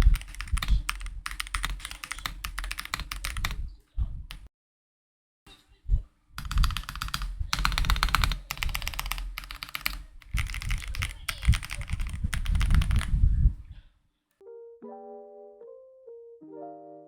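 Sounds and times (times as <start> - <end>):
mechanical keyboard key clacks: 6.4 - 13.1.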